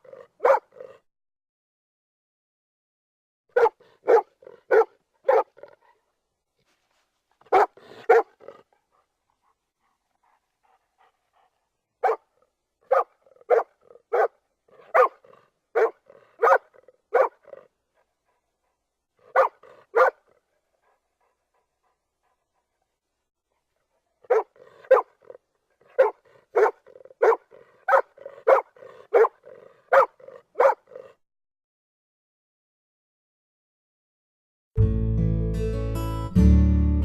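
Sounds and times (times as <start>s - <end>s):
dog barking: 0.0s - 1.0s, 3.5s - 6.0s, 7.5s - 8.6s, 12.0s - 17.7s, 19.2s - 20.4s, 24.2s - 31.2s.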